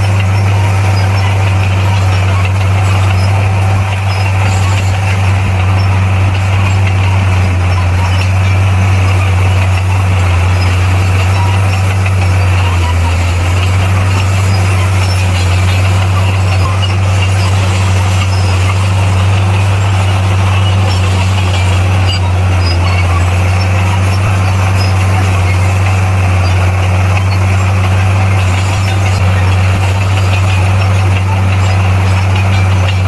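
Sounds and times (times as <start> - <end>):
heavy diesel engine running: 0.0 - 33.0.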